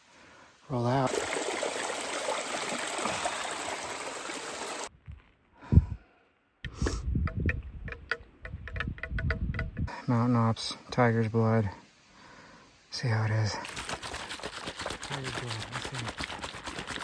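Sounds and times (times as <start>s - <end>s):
running water: 0.8s - 4.9s, 6.7s - 9.9s, 13.6s - 17.0s
quick clicks and rattles: 6.7s - 9.9s
single knock: 6.7s - 9.9s.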